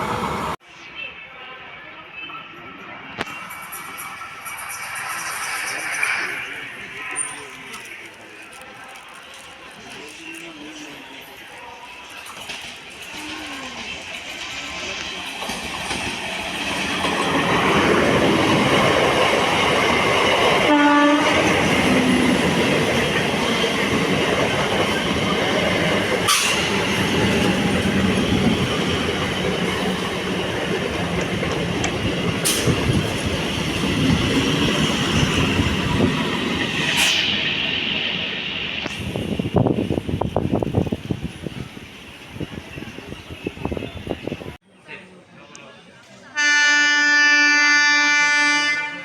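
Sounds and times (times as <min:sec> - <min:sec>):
electric train running past: 0:02.4 - 0:08.3, 0:10.7 - 0:44.6
train horn blast: 0:20.6 - 0:21.5, 0:46.4 - 0:49.0.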